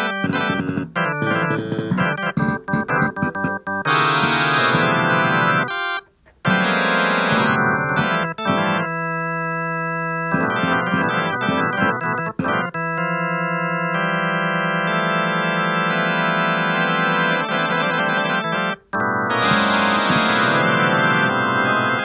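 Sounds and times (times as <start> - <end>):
organ-like keyboard chords: 0.0 - 22.0.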